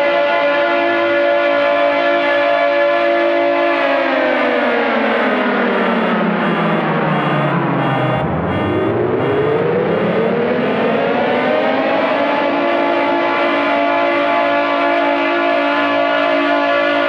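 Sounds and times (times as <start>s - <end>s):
multiple sirens wailing: 0.0s - 17.0s
siren winding up: 2.8s - 17.0s.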